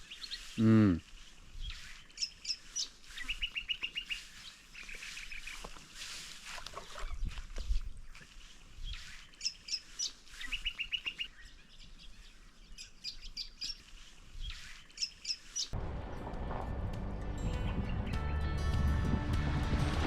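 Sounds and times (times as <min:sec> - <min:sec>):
birds chirping: 0:00.0 - 0:16.2
music: 0:15.8 - 0:20.0.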